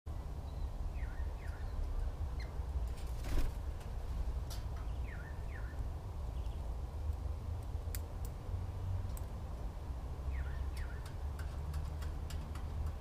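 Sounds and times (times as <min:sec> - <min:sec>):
birds calling: 0:00.4 - 0:02.7, 0:04.6 - 0:06.7, 0:10.2 - 0:11.6.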